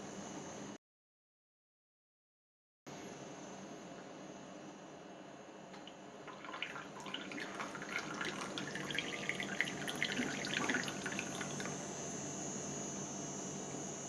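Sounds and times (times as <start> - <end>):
moka pot sputtering and gurgling: 6.4 - 11.9.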